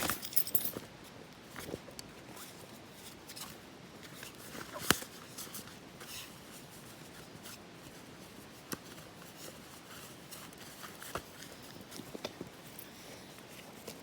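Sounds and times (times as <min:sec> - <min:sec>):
gear rustling and handling: 0:00.0 - 0:00.9.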